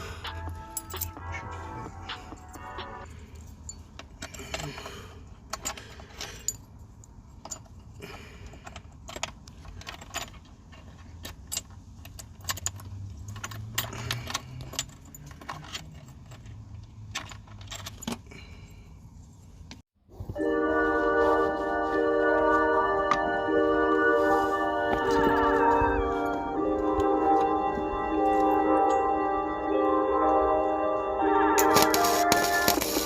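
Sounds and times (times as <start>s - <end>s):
metal tools clinking: 0.2s - 1.4s.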